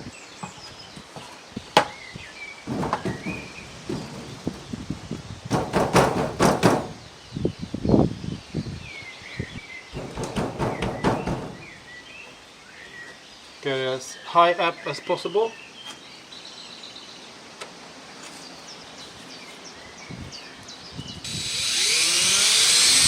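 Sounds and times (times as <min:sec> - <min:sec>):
birds chirping: 0:00.0 - 0:23.0
hinges rattling: 0:02.6 - 0:07.0, 0:09.9 - 0:11.9
wooden window knocking and clattering: 0:02.7 - 0:07.0, 0:09.9 - 0:11.8.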